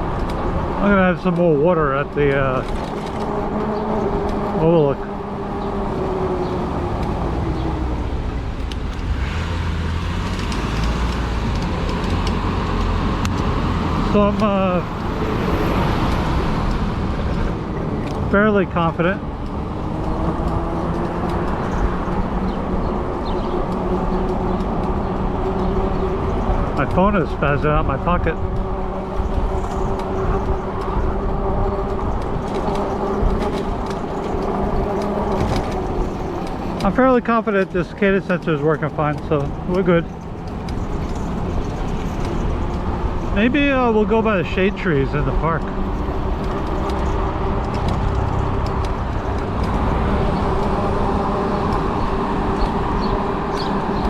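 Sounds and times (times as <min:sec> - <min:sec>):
e-bike riding rumble: 0:00.0 - 0:54.0
road and traffic noise: 0:00.0 - 0:54.0
electric bike motor whining: 0:02.9 - 0:14.0.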